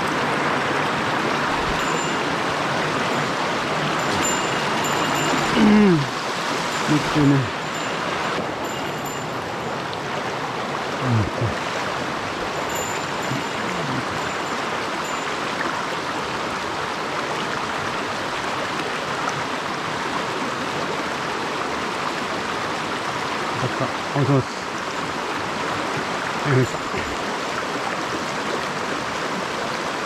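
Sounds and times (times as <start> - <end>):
stream rushing over rocks: 0.0 - 30.0.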